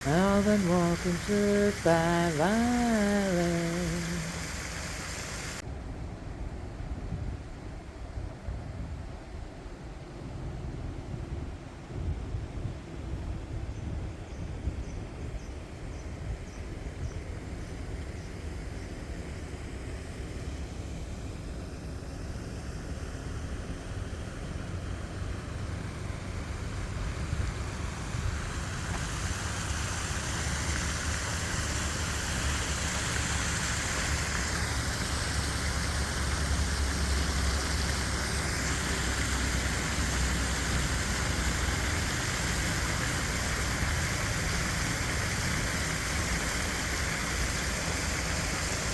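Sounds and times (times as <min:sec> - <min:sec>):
water pouring into creek: 0:00.0 - 0:05.6, 0:19.8 - 0:48.9
low rumble of freeway traffic: 0:04.3 - 0:48.9.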